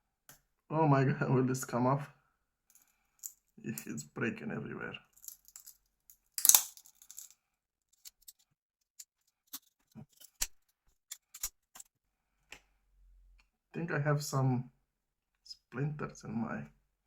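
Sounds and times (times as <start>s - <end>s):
glass screen protector cracking: 6.4s - 7.2s.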